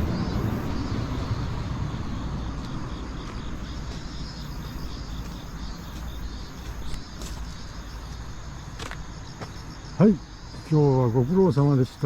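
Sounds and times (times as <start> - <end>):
passing vehicle rumble: 0.0 - 4.6
insects chirping: 0.0 - 12.0.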